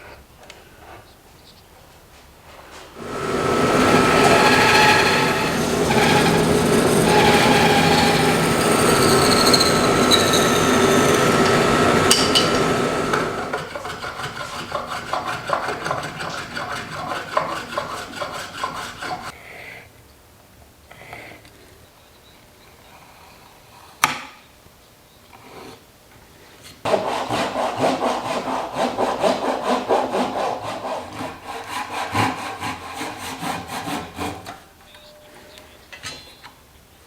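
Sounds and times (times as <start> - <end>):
woodworking machine running: 3.0 - 18.3
rhythmic rasping strokes on wood: 3.0 - 19.4, 26.9 - 34.5.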